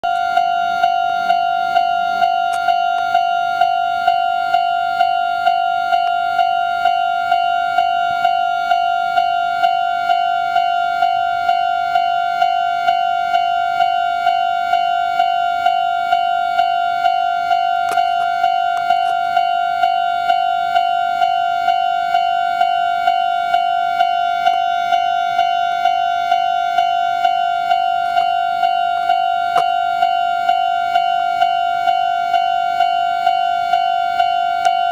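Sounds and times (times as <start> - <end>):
level crossing warning bell: 0.0 - 34.9.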